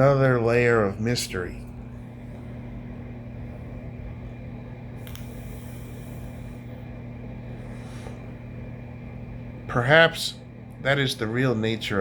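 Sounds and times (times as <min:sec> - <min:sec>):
steady low hum: 0:00.0 - 0:12.0
faint high hiss: 0:05.0 - 0:06.8.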